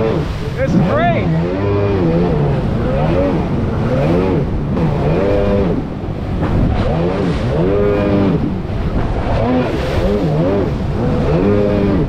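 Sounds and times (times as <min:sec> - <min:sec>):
jet ski engine revving: 0:00.0 - 0:12.0
steady rush of noise: 0:00.0 - 0:12.0.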